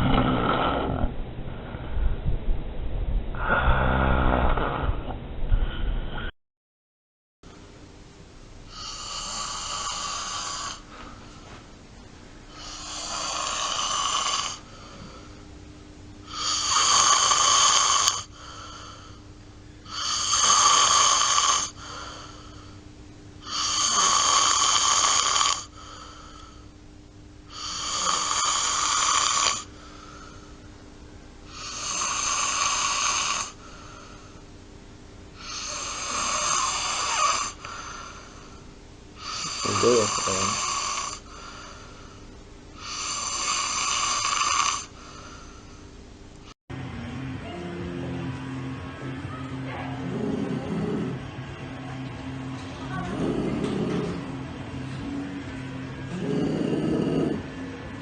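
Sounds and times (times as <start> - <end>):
person snoring: 0.0 - 1.1, 3.4 - 6.3, 8.7 - 11.2, 12.5 - 15.4, 16.2 - 19.2, 19.8 - 22.8, 23.4 - 26.6, 27.5 - 30.6, 31.5 - 34.4, 35.4 - 38.6, 39.2 - 42.2, 42.8 - 45.8, 49.3 - 58.0.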